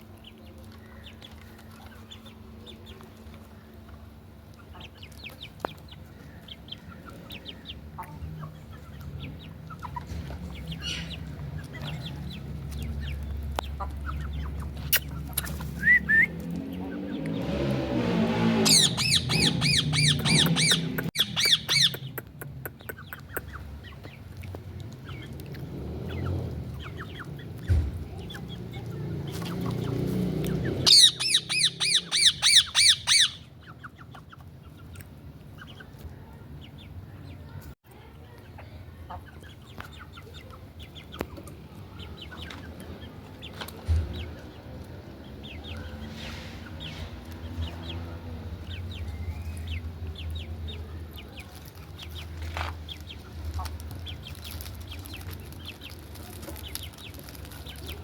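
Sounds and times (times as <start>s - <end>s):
parakeet squawking: 18.6s - 22.1s, 30.9s - 33.5s.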